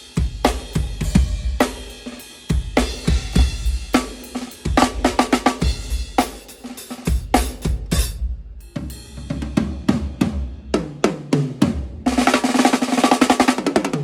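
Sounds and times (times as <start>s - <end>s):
tom drum fill: 0.2s - 1.8s, 7.1s - 12.6s
snare drum roll: 2.8s - 8.2s, 9.2s - 14.0s.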